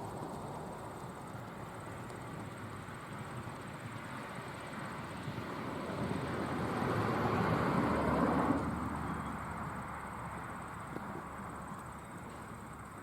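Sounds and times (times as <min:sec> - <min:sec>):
vehicle passing by: 0:05.1 - 0:10.6.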